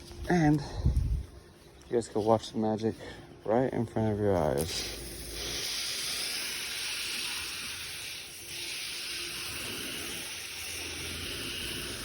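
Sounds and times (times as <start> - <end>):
spray hissing: 4.4 - 12.0.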